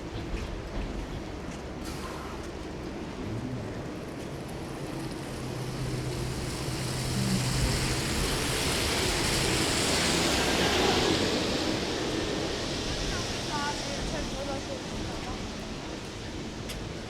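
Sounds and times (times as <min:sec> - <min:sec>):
tyre hiss on wet road: 0:05.2 - 0:16.9.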